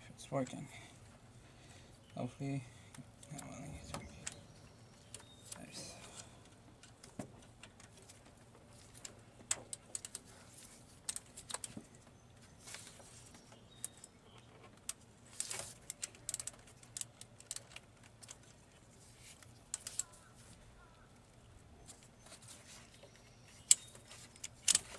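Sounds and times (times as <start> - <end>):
faint steady hum: 0.0 - 24.9
tools and parts clicking: 14.8 - 18.5, 23.5 - 24.9.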